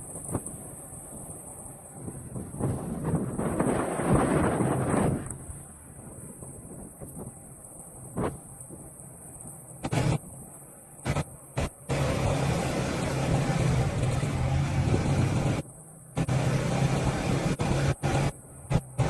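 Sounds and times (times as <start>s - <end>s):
road and wind noise: 0.0s - 19.0s
motorcycle engine running: 11.1s - 19.0s.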